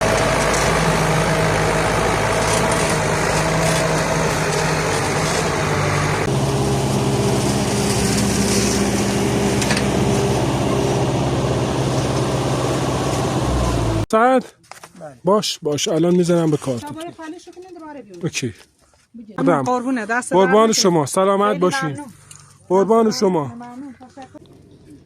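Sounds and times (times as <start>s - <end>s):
engine running: 0.0s - 14.1s, 21.5s - 25.0s.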